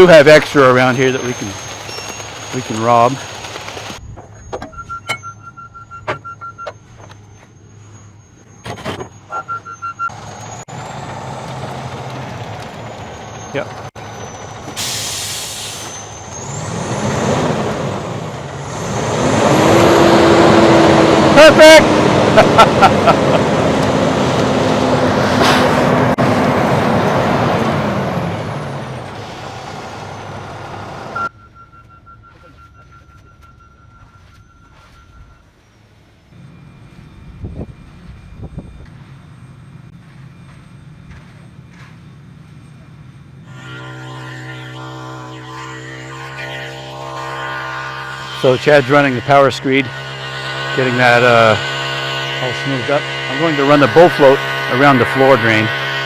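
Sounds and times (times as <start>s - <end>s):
truck reversing alarm beeping: 0.0s - 56.0s
low engine hum: 10.0s - 31.3s, 36.3s - 43.4s
air hiss: 14.8s - 16.0s.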